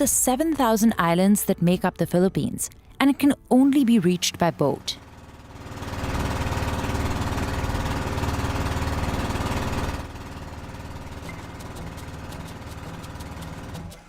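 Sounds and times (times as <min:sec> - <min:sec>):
small boat engine running: 0:03.0 - 0:14.0.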